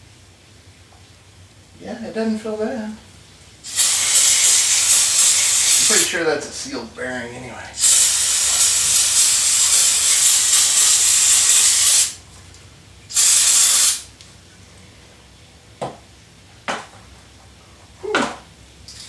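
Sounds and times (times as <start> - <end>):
aerosol can spraying: 3.7 - 6.6, 7.8 - 12.2, 13.1 - 14.1.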